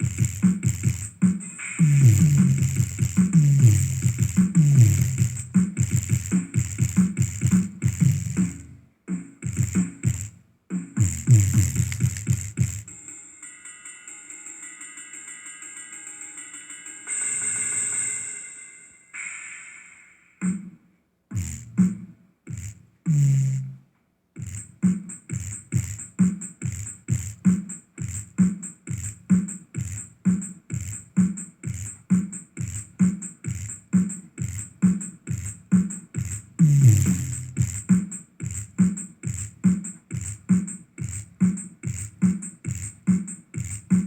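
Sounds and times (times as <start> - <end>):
deep kick drum: 0.0 - 8.8, 9.4 - 10.4, 11.0 - 12.9, 21.3 - 23.8, 24.4 - 44.0.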